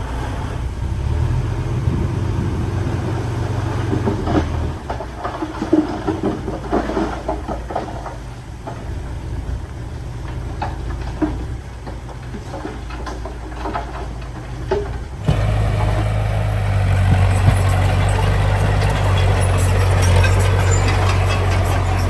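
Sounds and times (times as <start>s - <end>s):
diesel machine droning: 0.0s - 22.0s
clanks of metal and stone: 10.5s - 22.0s.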